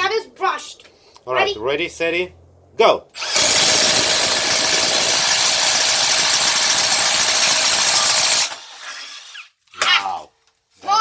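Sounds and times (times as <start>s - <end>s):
impact driver rattling buzz: 3.2s - 9.3s.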